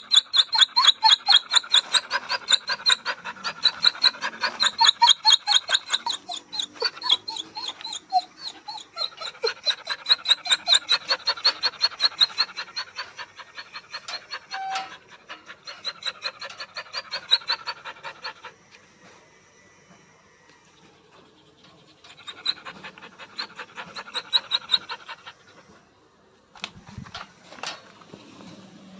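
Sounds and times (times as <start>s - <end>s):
dog whimpering: 0.0s - 18.6s, 21.9s - 25.8s.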